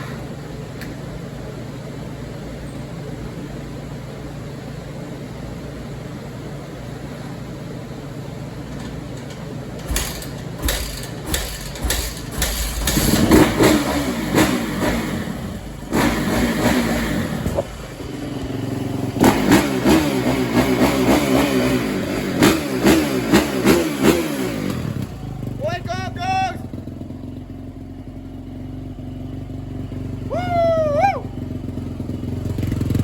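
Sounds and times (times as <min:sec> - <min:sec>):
dirt bike engine revving: 0:09.7 - 0:27.2.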